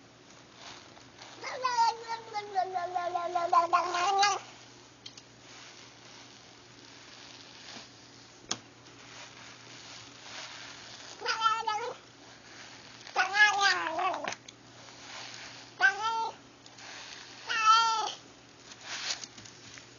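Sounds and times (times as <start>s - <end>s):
cat meowing: 1.4s - 4.4s, 11.2s - 12.0s, 13.1s - 14.3s, 15.8s - 16.4s, 17.4s - 18.2s.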